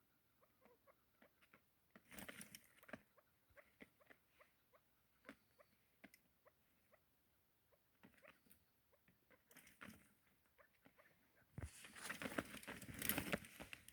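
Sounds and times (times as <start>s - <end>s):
crackling and rustling: 11.6s - 13.9s.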